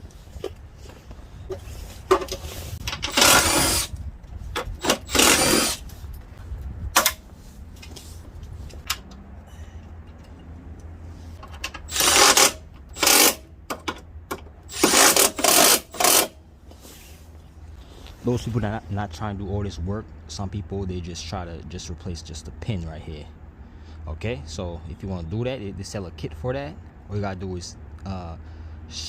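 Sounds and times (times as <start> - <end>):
power tool running in bursts: 3.1 - 3.9, 4.8 - 5.8, 11.9 - 13.4, 14.7 - 16.4.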